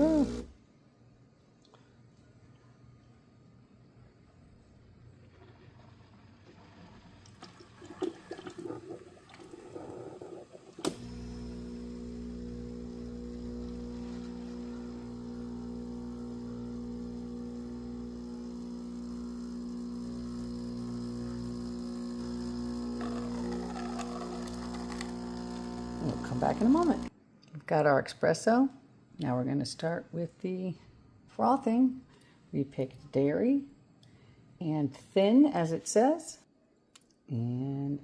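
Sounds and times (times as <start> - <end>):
espresso machine pump humming: 0.0 - 0.6, 10.3 - 27.1.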